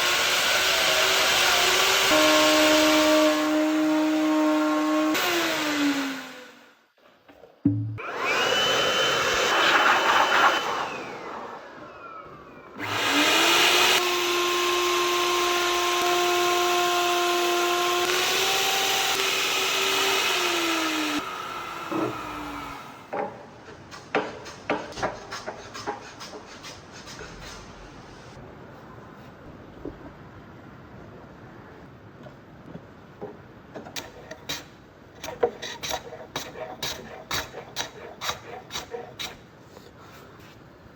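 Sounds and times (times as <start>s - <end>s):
power tool motor whining: 12.8s - 23.0s.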